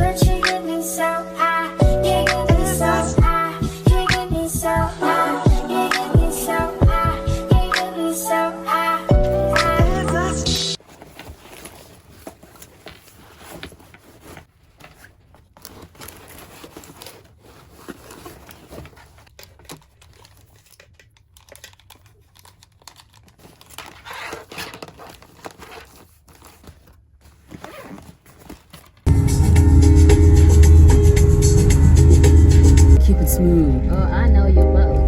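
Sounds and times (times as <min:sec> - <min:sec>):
packaging crinkling and tearing: 0:10.8 - 0:29.1.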